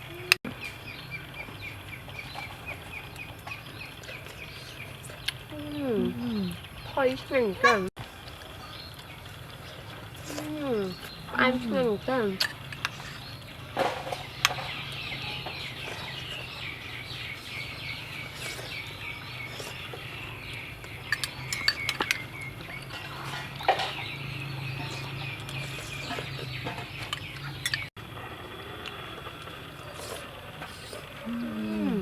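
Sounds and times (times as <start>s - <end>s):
birds chirping rapidly: 0.0s - 7.9s, 8.6s - 27.9s, 29.8s - 32.0s
steady low hum: 0.0s - 21.6s
cooking utensils clinking: 20.9s - 27.9s.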